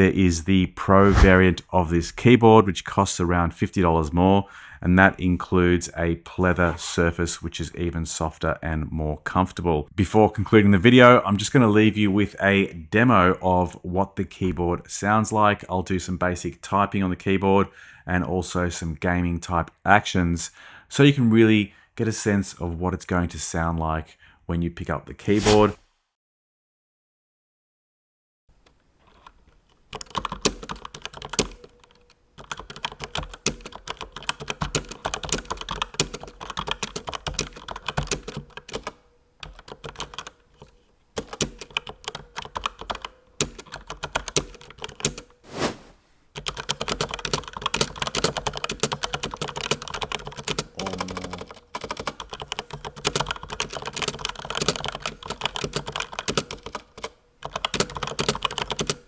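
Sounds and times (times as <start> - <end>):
mechanical keyboard typing: 29.9 - 45.3, 46.4 - 59.0.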